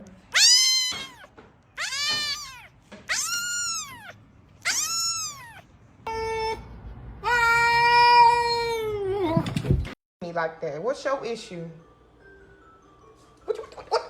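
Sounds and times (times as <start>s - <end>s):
cat meowing: 0.2s - 6.6s.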